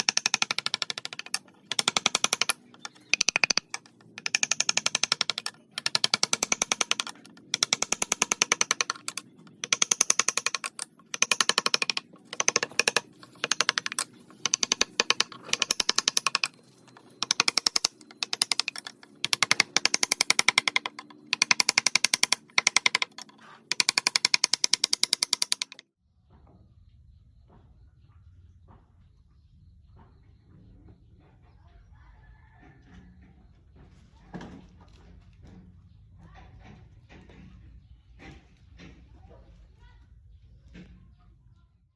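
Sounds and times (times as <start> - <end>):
chisel tapping on wood: 0.0 - 25.8.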